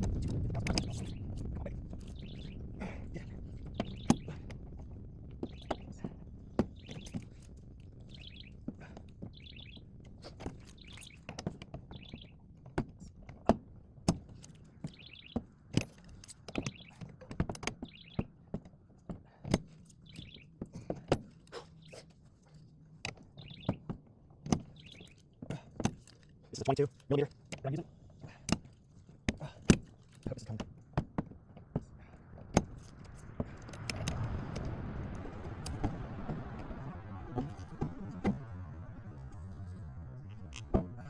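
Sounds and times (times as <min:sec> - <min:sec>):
bird chirping: 0:00.0 - 0:12.5, 0:14.4 - 0:18.4, 0:19.9 - 0:20.8, 0:23.2 - 0:23.9, 0:24.5 - 0:25.4, 0:32.0 - 0:41.0.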